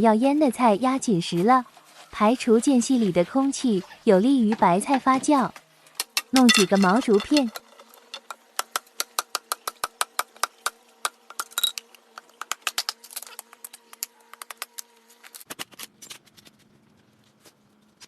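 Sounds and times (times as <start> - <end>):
bamboo strips knocking and cracking: 6.0 - 16.5.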